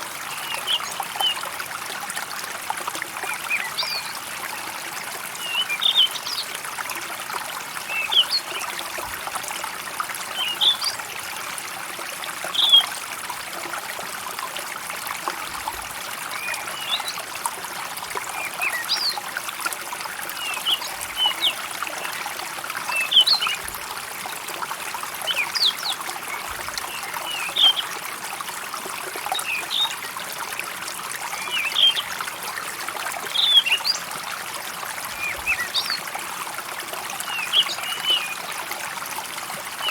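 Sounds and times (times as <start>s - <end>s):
stream trickling: 0.0s - 39.9s.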